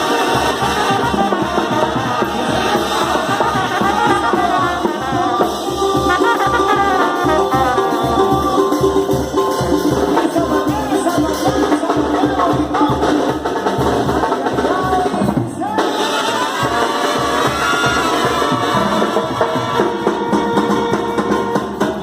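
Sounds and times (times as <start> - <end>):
latin dance music with singing: 0.0 - 22.0.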